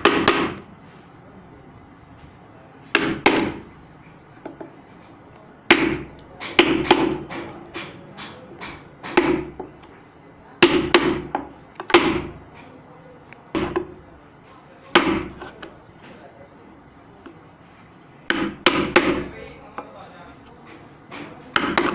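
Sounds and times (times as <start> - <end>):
hammer knocking on wood: 0.0 - 0.6, 2.9 - 3.7, 5.7 - 9.7, 10.6 - 12.4, 13.6 - 14.0, 15.0 - 15.5, 18.3 - 19.3, 21.1 - 21.9.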